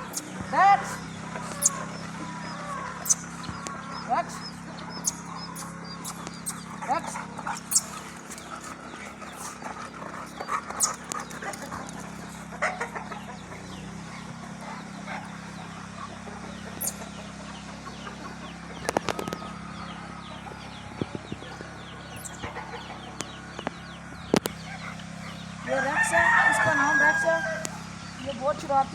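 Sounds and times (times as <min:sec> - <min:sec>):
sharp clicks: 0:00.0 - 0:00.4, 0:23.2 - 0:24.6
chickens clucking: 0:00.0 - 0:28.9
steady low hum: 0:00.0 - 0:28.9.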